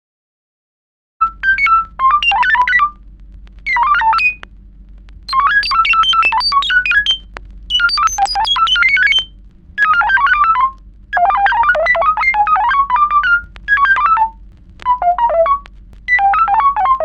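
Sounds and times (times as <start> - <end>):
low steady hum: 1.2 - 17.0
rapid electronic bleeps: 1.5 - 3.0, 3.7 - 4.4, 5.3 - 17.0.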